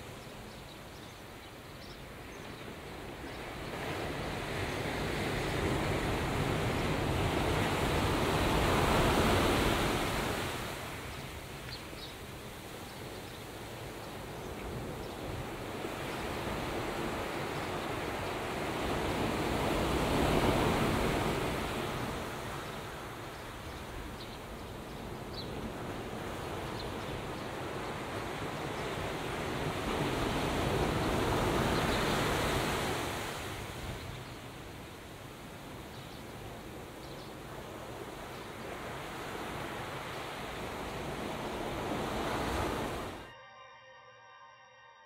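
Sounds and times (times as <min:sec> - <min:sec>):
water rushing: 0:37.8 - 0:43.3.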